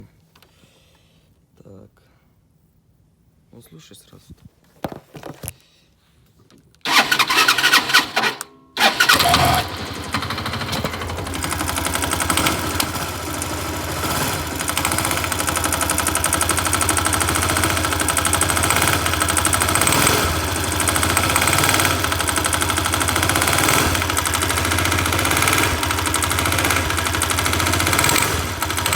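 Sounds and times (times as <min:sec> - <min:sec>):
electric starter cranking: 0:06.8 - 0:28.9
engine knock: 0:06.9 - 0:28.9
motorcycle engine running: 0:06.9 - 0:28.9.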